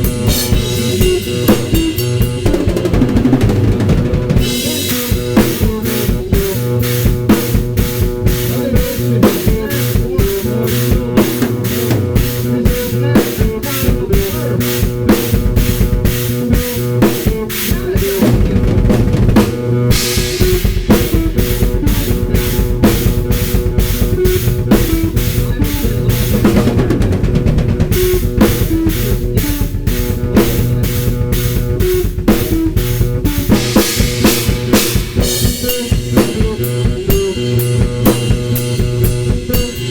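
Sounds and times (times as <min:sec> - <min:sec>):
guitar riff: 0:00.0 - 0:39.9
bass drum and snare hits: 0:18.2 - 0:39.9.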